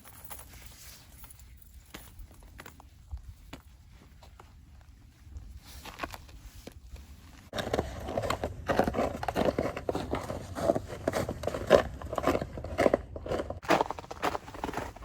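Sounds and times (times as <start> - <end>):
footsteps crunching on snow: 0.1 - 15.0.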